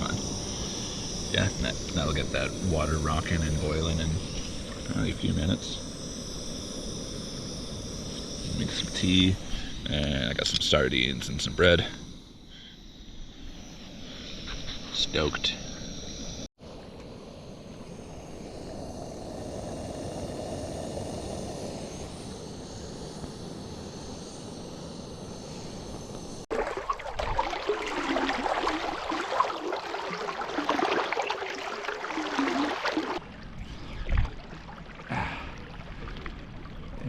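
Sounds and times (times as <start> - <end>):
splashing rushing water: 26.5 - 37.0.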